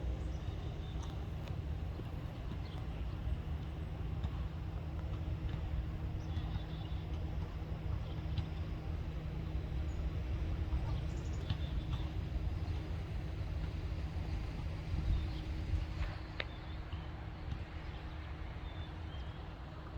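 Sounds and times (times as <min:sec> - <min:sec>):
low outdoor rumble: 0:00.0 - 0:19.9.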